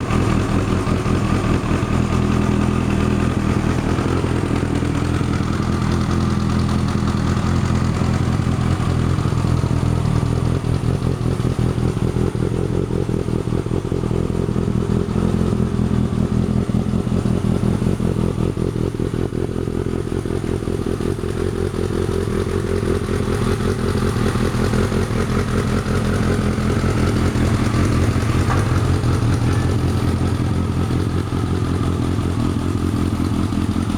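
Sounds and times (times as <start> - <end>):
motorcycle engine running with mechanical noise: 0.0 - 33.9.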